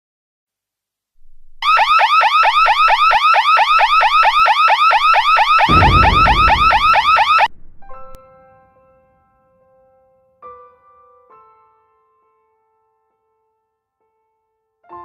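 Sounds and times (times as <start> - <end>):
low rumble: 5.7 - 8.8.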